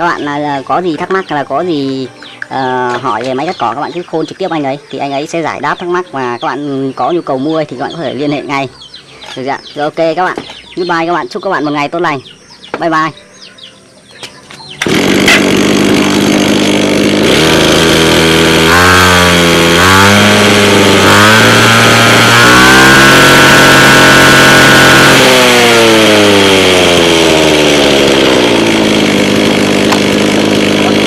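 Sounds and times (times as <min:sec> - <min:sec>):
grass cutter engine revving: 0:14.7 - 0:31.0.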